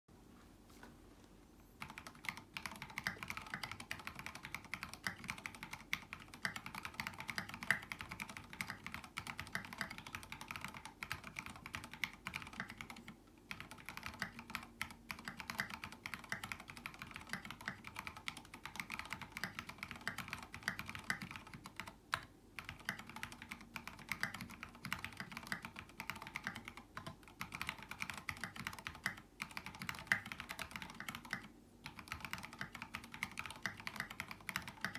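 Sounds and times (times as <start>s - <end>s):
mechanical keyboard typing: 1.8s - 34.9s.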